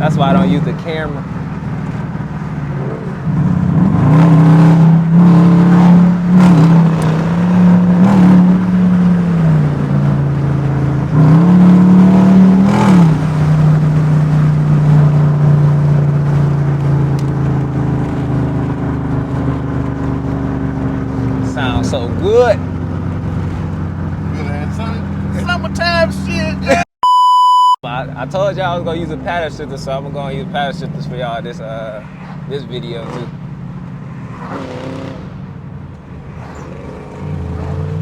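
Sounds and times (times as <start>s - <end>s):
engine accelerating hard: 0.0s - 26.8s.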